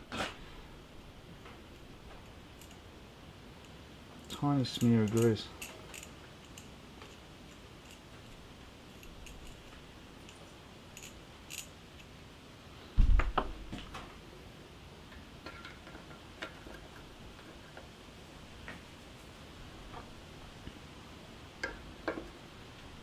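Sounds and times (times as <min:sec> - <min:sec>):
small metal parts clicking and clinking: 0:01.7 - 0:02.9, 0:03.6 - 0:12.2.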